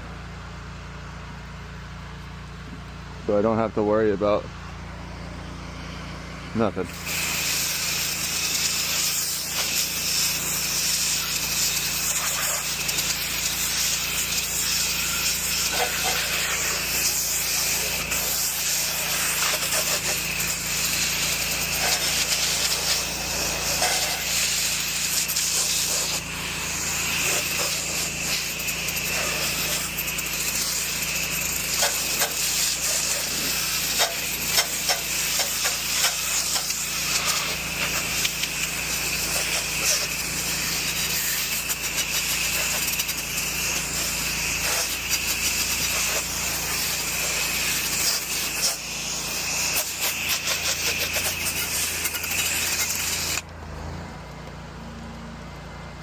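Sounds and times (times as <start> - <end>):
engine humming: 0.0 - 56.0
pressure washer water jet hissing: 5.1 - 53.5.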